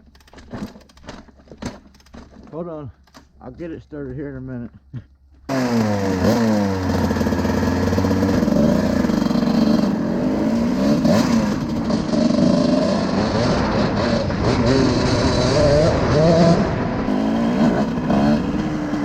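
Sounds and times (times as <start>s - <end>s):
dirt bike engine revving: 5.5s - 19.0s.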